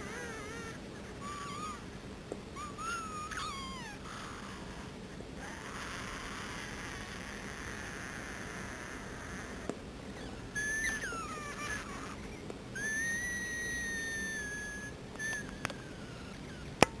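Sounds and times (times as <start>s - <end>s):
high thin whistling: 10.6s - 16.0s.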